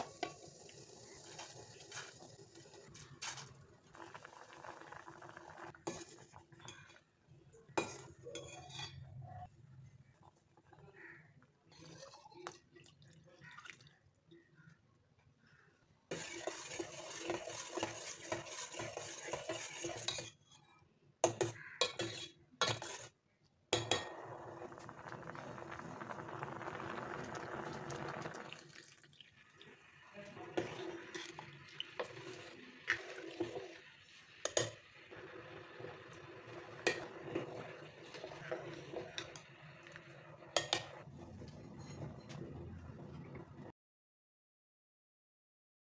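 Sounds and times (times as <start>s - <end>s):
metal utensil scraping a pot: 5.7s - 7.0s, 7.7s - 9.4s, 11.7s - 12.5s, 16.1s - 23.2s, 30.4s - 33.8s, 34.4s - 42.6s
liquid stirring: 5.7s - 7.1s, 16.1s - 20.6s, 21.2s - 23.2s, 28.5s - 42.4s.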